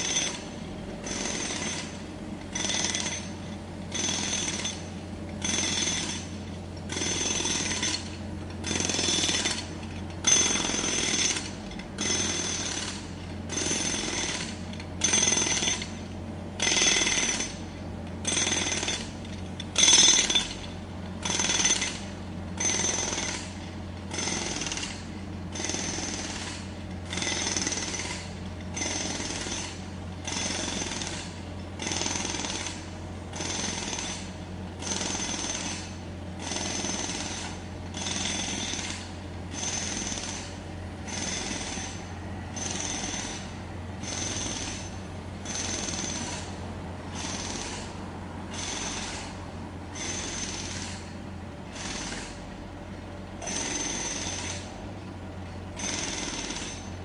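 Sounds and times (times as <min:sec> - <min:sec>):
steady low hum: 0:00.0 - 0:22.6
jackhammer hammering with metallic ring: 0:00.0 - 0:57.0.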